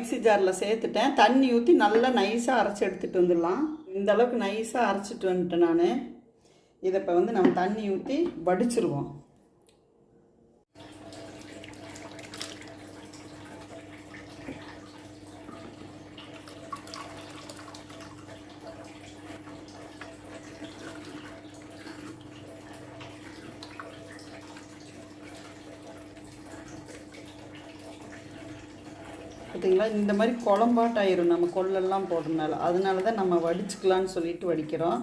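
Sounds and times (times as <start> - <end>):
liquid trickling through a strainer: 10.8 - 34.2.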